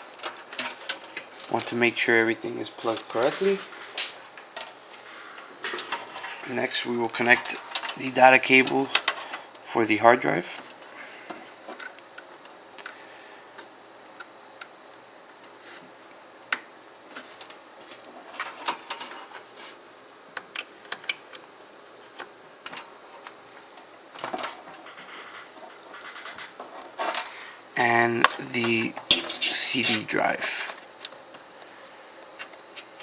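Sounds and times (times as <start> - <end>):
rustling and scraping: 0.0 - 9.5, 15.4 - 16.2, 17.1 - 20.1, 22.1 - 33.0.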